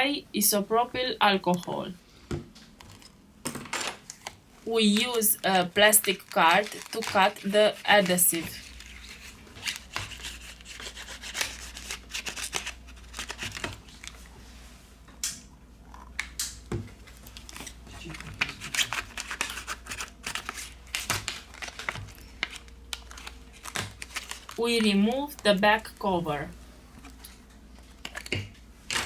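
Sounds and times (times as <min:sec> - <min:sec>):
plastic card scraping phone seam: 0:18.4 - 0:24.6.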